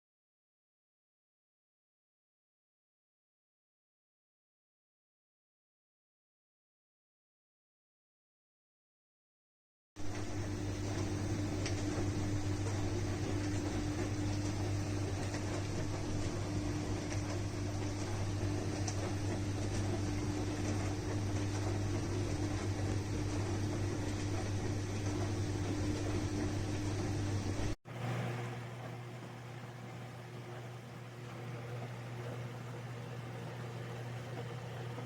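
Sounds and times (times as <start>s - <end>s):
dishwasher running: 10.0s - 35.0s.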